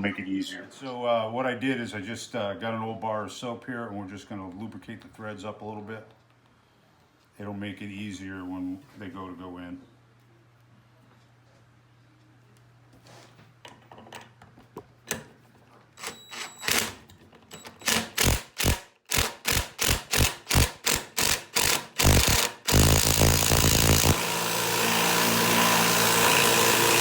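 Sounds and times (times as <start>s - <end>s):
impact driver running: 16.0s - 17.0s, 17.8s - 27.0s.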